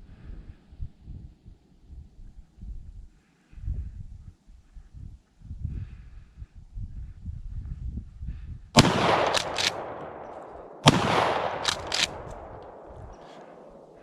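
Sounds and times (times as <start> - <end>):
faint sharp cracks: 8.8 - 14.0
shotgun blasts with echo: 8.8 - 14.0.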